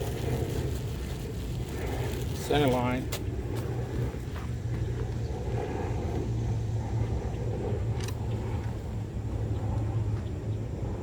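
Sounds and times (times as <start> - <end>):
distant road traffic rumble: 0.0 - 11.0.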